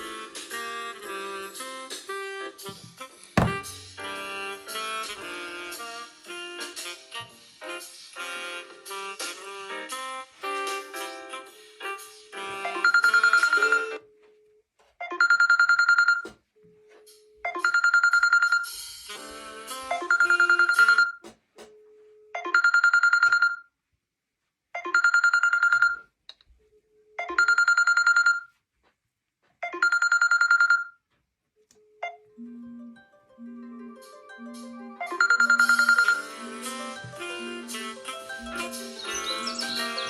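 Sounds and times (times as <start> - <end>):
trilling telephone ringtone: 12.8 - 14.0, 15.1 - 16.2, 17.5 - 18.8, 20.0 - 21.2, 22.4 - 23.7, 24.8 - 26.1, 27.2 - 28.6, 29.6 - 31.0, 32.1 - 36.9
low melodic ringtone: 32.4 - 40.0.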